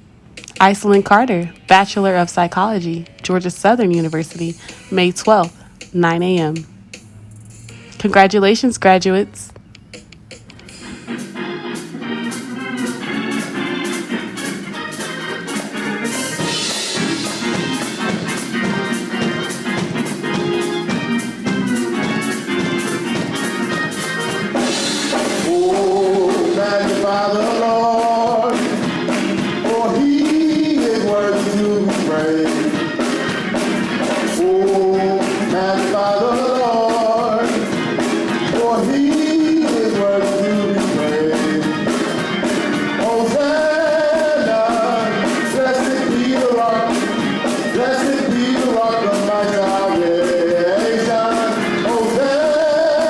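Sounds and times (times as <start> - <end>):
upbeat music: 0.0 - 53.0
steady drum beat: 2.7 - 53.0
person singing: 25.2 - 33.2, 34.1 - 53.0.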